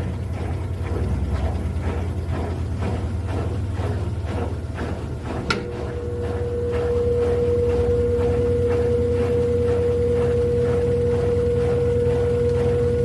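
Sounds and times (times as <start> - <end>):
spin cycle whine: 0.0 - 13.0
washing machine motor hum: 0.0 - 13.0
washing machine click: 5.4 - 5.8.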